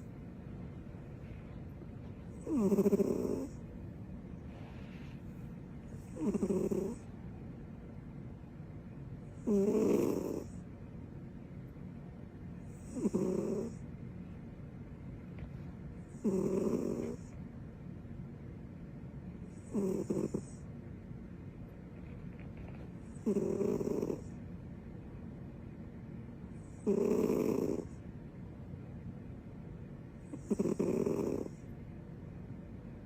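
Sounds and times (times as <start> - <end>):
cat snoring: 2.3 - 3.6, 5.9 - 7.1, 9.4 - 10.6, 12.7 - 13.8, 16.0 - 17.4, 19.5 - 20.7, 23.0 - 24.4, 26.6 - 28.0, 30.2 - 31.6
faint low breathing: 3.4 - 6.2.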